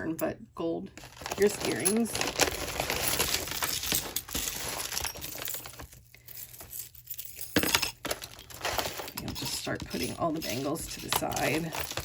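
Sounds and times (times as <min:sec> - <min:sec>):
jewelry clinking together: 0:03.1 - 0:12.0.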